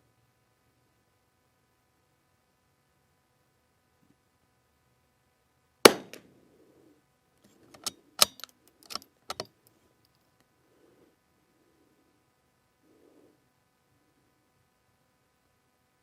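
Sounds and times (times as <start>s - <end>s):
rifle shot with ringing tail: 5.9s - 6.2s
rifle bolt metallic clicks: 7.7s - 9.5s.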